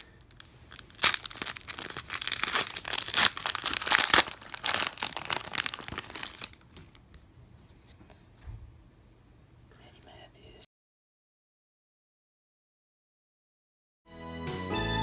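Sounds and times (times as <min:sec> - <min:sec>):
wrapper crinkling and tearing: 0:00.0 - 0:07.2.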